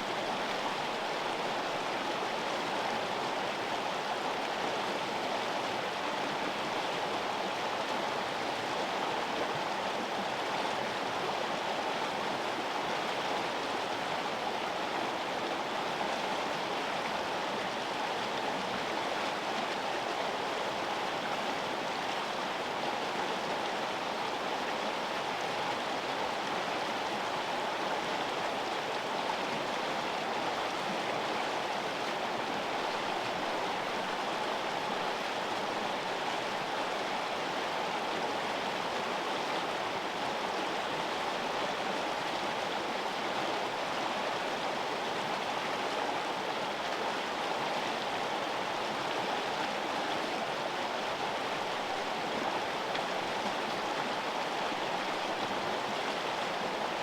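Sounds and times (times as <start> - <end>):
river flowing: 0.0 - 57.0.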